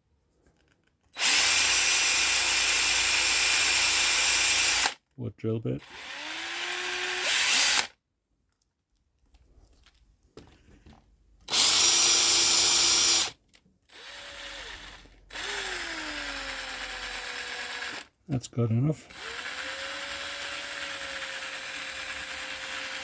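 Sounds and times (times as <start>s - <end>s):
power drill boring into wood: 1.2s - 5.0s, 5.8s - 8.0s, 11.5s - 18.2s, 19.0s - 23.0s.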